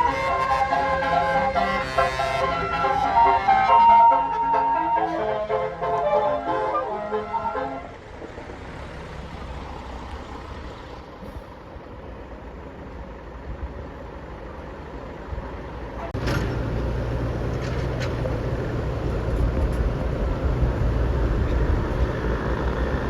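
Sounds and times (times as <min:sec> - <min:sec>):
bus horn tune: 0:00.0 - 0:08.0
heavy vehicle engine humming: 0:00.0 - 0:23.0
road traffic rumble: 0:00.0 - 0:23.0.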